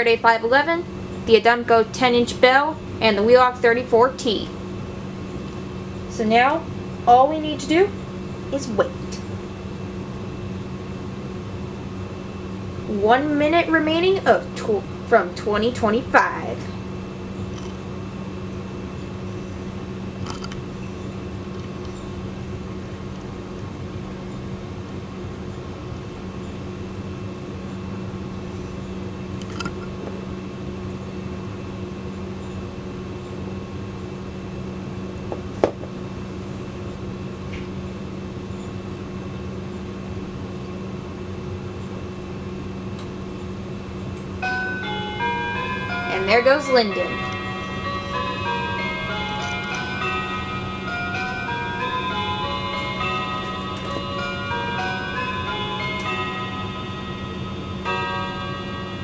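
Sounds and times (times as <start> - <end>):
low electrical hum: 0.0 - 59.0
mantel clock chiming: 44.4 - 59.0.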